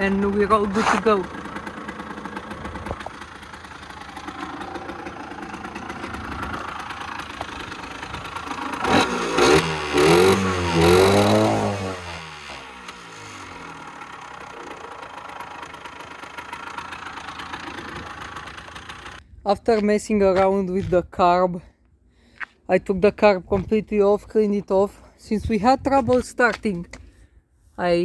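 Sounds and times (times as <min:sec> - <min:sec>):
moped engine idling and revving: 0:00.0 - 0:19.2.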